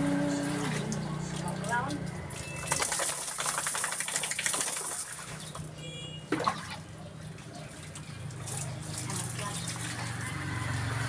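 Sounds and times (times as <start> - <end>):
water splashing: 2.4 - 5.6.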